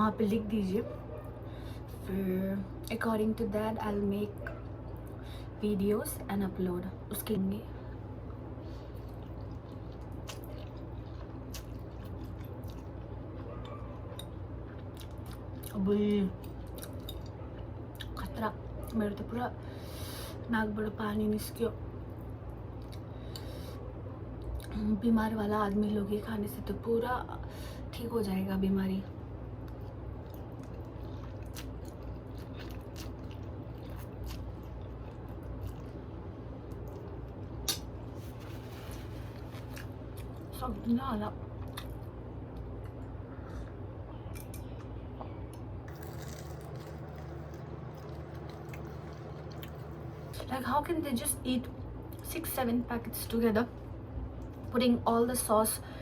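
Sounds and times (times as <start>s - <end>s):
low room hum: 0.0s - 56.0s
person chewing: 9.0s - 15.8s, 29.7s - 36.0s, 36.7s - 40.5s, 45.5s - 50.4s
person chewing with mouth clicks: 45.5s - 50.4s.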